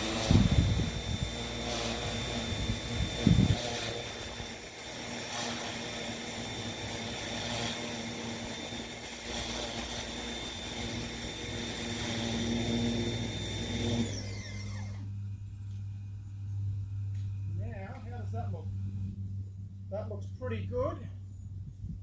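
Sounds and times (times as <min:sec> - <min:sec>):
motor winding down whine: 0:00.0 - 0:15.9.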